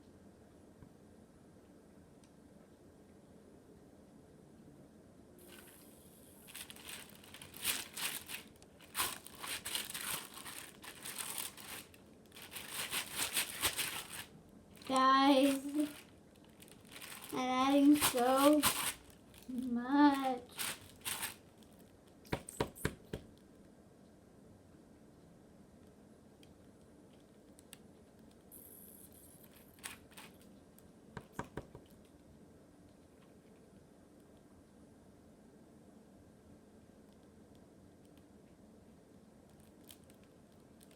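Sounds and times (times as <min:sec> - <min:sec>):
crinkling and rustling: 0:05.4 - 0:23.4, 0:29.3 - 0:32.2, 0:39.5 - 0:40.9
faint sharp clicks and taps: 0:31.2 - 0:34.5.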